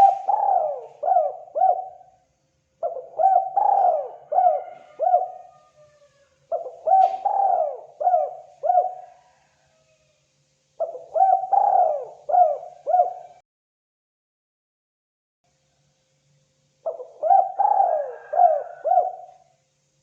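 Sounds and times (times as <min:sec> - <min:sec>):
dove cooing: 0:00.0 - 0:02.2, 0:02.8 - 0:10.0, 0:10.8 - 0:13.4, 0:16.8 - 0:19.4.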